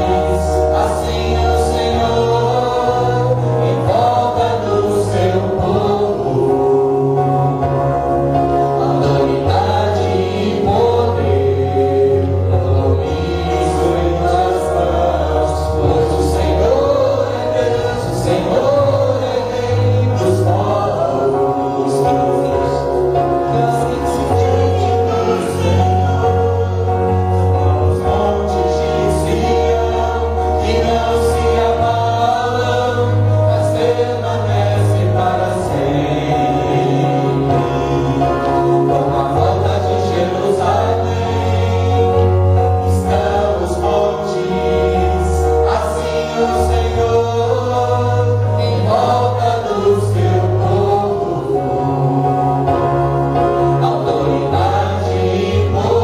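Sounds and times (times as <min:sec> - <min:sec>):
choir singing gospel: 0:00.0 - 0:56.0
sustained bass notes: 0:00.0 - 0:56.0.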